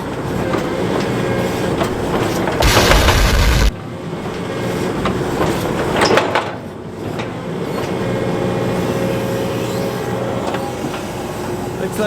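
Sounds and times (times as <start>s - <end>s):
loud rushing noise: 2.6s - 3.8s
excavator diesel engine running: 2.6s - 3.9s.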